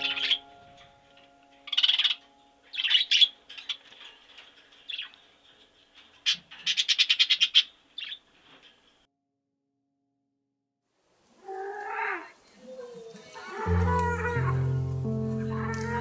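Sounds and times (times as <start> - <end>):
bird chirping calls: 0.0 - 1.0, 1.6 - 5.3.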